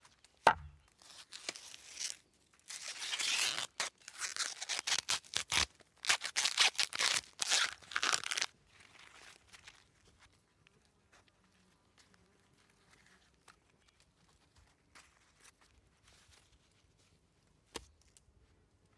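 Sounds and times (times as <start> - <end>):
sharp knock: 0.5 - 0.8
paper tearing and crinkling: 1.0 - 8.5.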